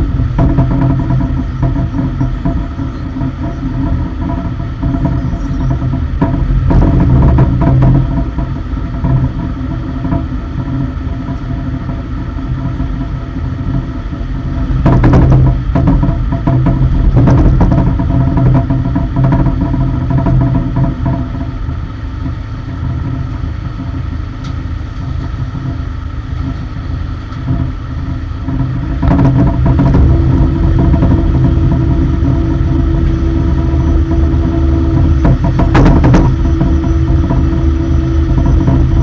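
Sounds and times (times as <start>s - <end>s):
cargo loader engine running: 0.0s - 39.0s
steady hum: 0.0s - 39.0s
loud metallic clanks: 28.8s - 39.0s.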